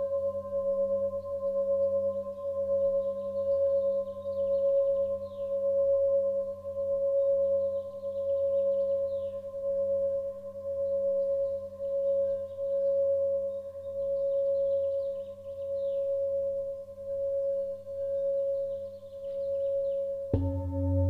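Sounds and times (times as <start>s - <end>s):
ringing drone tone: 20.3s - 21.0s.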